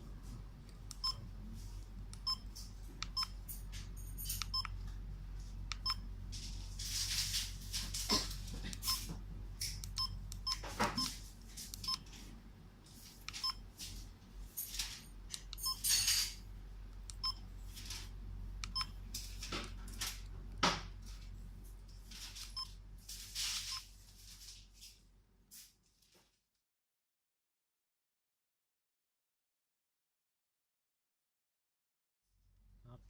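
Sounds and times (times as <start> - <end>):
rustling handling noise: 6.3 - 9.3, 10.6 - 15.2, 21.0 - 26.4.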